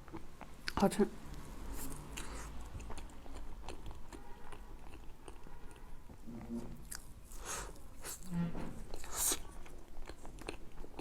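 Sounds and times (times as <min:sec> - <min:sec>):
wet chewing mouth sounds: 0:00.0 - 0:05.9, 0:08.9 - 0:11.0.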